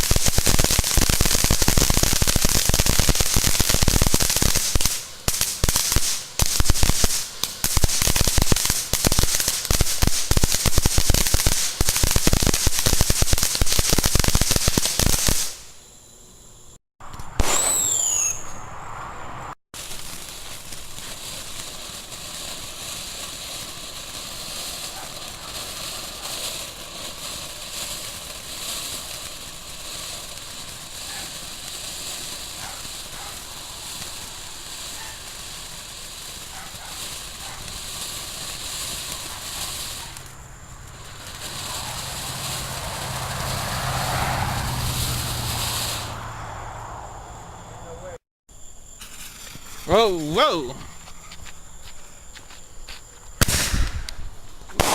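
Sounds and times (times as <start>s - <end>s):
firecrackers popping: 0.0s - 15.8s, 17.0s - 18.6s, 19.8s - 46.3s, 48.9s - 54.9s
steady background hiss: 0.1s - 16.8s, 19.8s - 44.0s, 45.6s - 54.9s
falling whistle: 17.4s - 18.8s.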